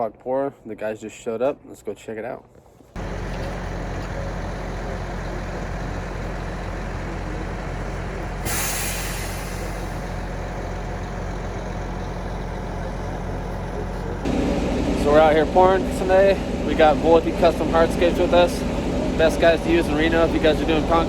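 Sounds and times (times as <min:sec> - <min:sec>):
diesel truck idling: 0:03.0 - 0:21.0
air brake hiss: 0:08.4 - 0:10.2.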